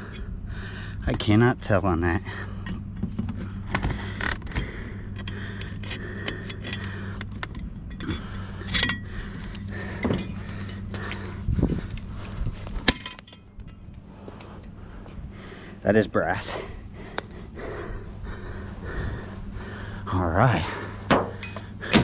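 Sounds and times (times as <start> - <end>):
steady low hum: 0.0 - 22.0
scrap metal clinking and knocking: 5.2 - 9.1, 9.8 - 11.3, 11.9 - 14.0.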